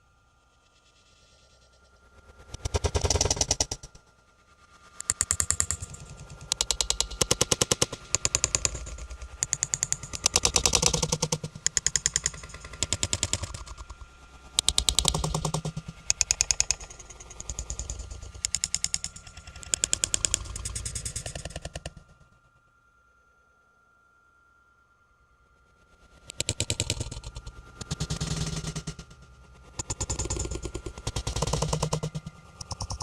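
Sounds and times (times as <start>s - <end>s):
rapid rattling knocks: 29.8s - 33.0s.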